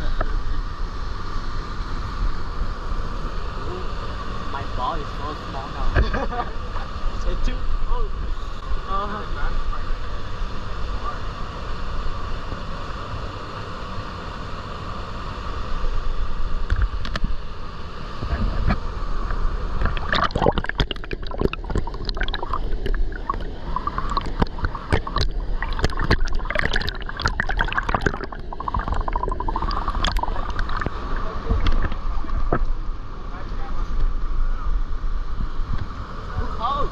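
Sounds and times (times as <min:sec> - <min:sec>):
splashing in water: 0:19.8 - 0:32.6.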